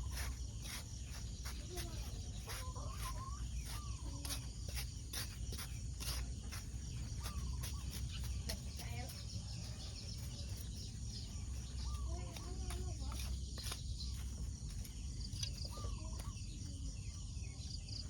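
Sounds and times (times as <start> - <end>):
faint wavering animal calls: 2.5 - 4.5.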